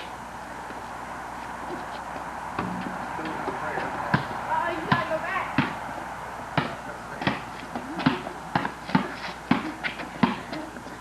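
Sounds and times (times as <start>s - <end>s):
basketball bouncing: 4.1s - 5.8s, 6.6s - 10.7s.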